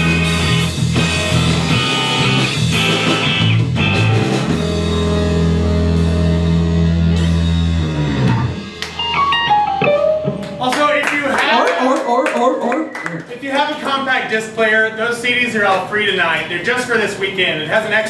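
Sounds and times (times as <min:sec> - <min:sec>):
loose guitar notes: 0:00.0 - 0:10.7
rock band playing live: 0:00.0 - 0:12.0.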